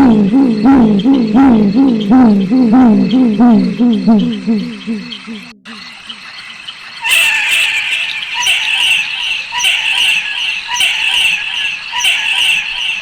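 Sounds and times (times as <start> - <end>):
owl hissing screeches: 7.0 - 13.0.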